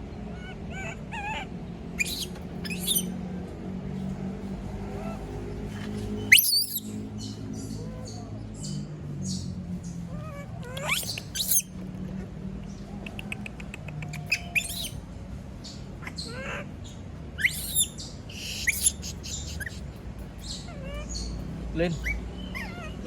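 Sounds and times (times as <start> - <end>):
monkey shrieking: 0.3 - 3.1, 6.3 - 6.9, 10.1 - 11.8, 14.1 - 15.0, 16.0 - 16.8, 17.4 - 19.8, 22.0 - 23.0.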